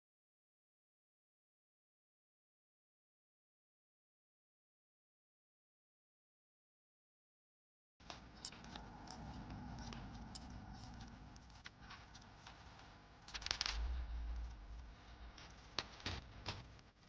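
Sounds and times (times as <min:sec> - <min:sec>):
handling clicks and scratches: 0:08.0 - 0:14.6
low rumble: 0:08.1 - 0:16.5.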